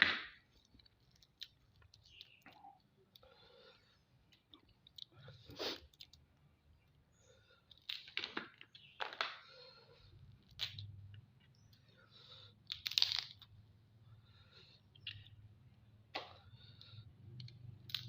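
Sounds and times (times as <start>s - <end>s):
crab shell cracking and crunching: 0.5s - 3.3s, 12.6s - 13.6s.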